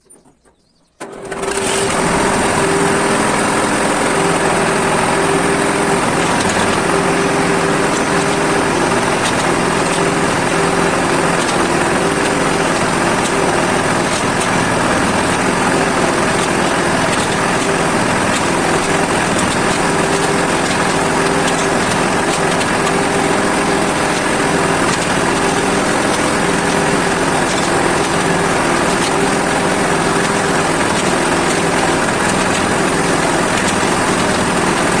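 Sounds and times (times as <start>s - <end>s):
tractor engine running: 0.0s - 35.0s.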